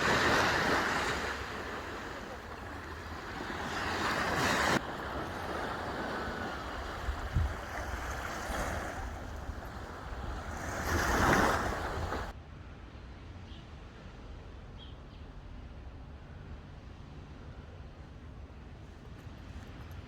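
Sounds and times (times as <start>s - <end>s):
sea waves washing ashore: 0.0s - 12.4s
wind rumble on microphone: 4.1s - 12.4s.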